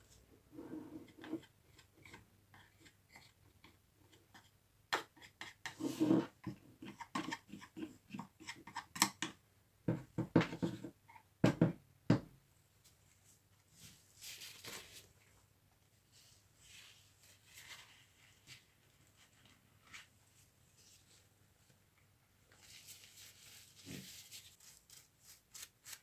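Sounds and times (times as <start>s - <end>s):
rubbing and brushing sounds: 5.2s - 8.8s, 12.7s - 21.8s, 22.5s - 26.0s.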